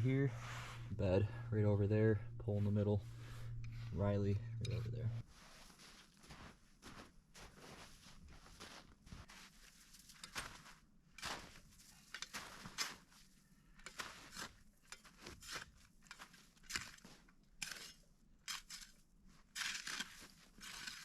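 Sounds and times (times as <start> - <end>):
crunching footsteps: 0.0 - 13.2.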